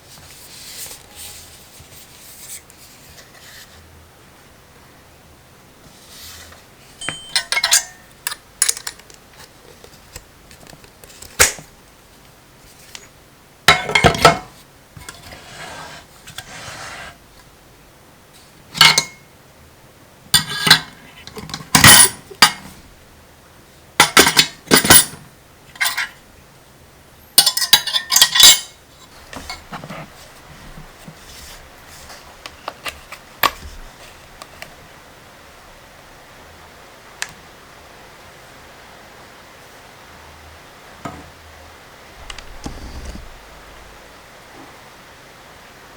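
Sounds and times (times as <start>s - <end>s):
hard objects clinking and clattering: 7.0s - 9.1s.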